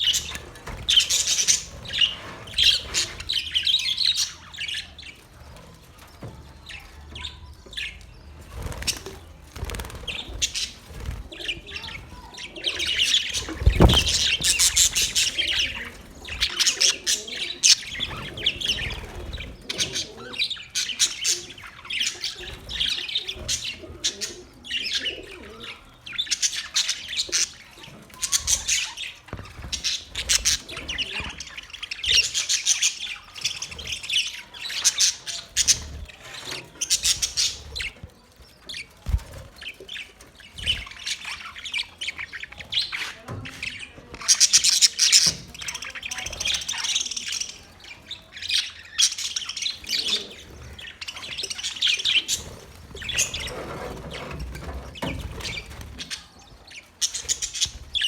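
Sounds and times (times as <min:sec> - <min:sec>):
budgerigars chirping and squawking: 0:00.0 - 0:58.0.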